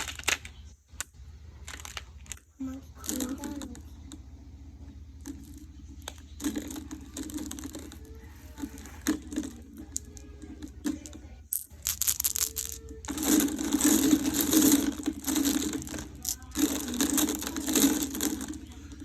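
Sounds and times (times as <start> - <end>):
glass marbles clicking: 10.9 - 18.8.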